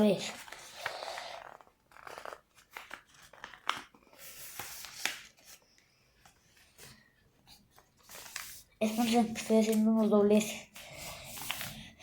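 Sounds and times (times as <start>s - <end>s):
sharp paper crease sounds: 0.0s - 5.6s, 10.9s - 12.0s
paper rustling and crinkling: 0.0s - 12.0s.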